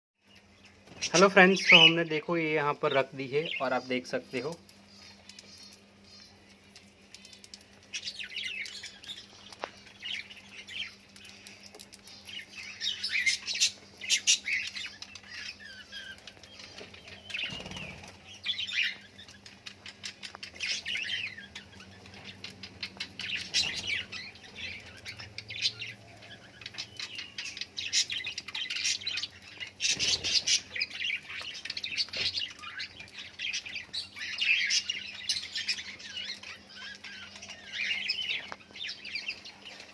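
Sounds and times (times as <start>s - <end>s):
parrots chirping and chattering: 0.2s - 2.1s, 3.3s - 39.9s
wing flutters: 16.1s - 18.2s.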